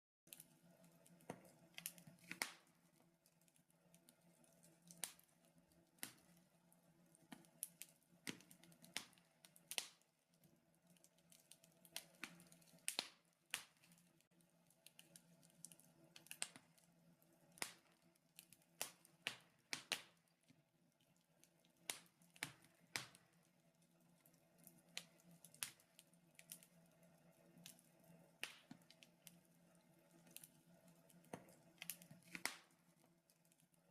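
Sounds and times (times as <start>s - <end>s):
wood fire crackling and popping: 0.3s - 33.9s.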